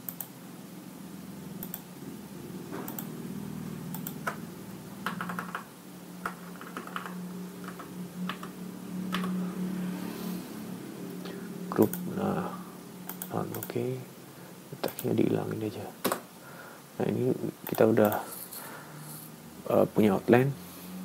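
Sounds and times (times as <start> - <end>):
keyboard and mouse clicks: 0.0 - 0.3, 1.6 - 1.9, 2.8 - 3.1, 3.9 - 4.4, 5.0 - 8.5, 9.1 - 9.4, 13.0 - 13.8, 14.8 - 15.1
steady low hum: 0.0 - 21.0.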